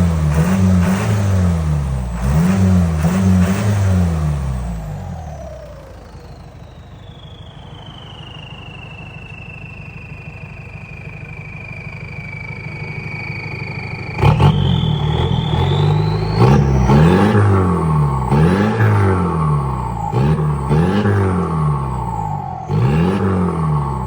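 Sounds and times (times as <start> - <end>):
engine idling and revving: 0.0 - 24.0
turbo whistle: 6.0 - 24.0.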